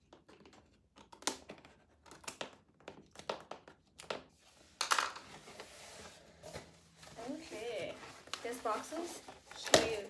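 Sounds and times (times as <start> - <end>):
box opening crinkling and scraping: 5.1 - 10.0.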